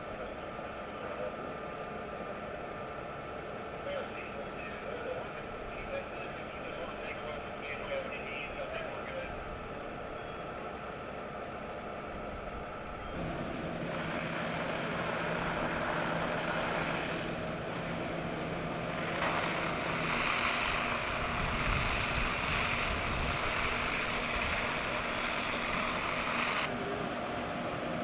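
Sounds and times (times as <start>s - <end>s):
fire engine humming: 0.0s - 28.0s
broad rushing noise: 13.2s - 28.0s.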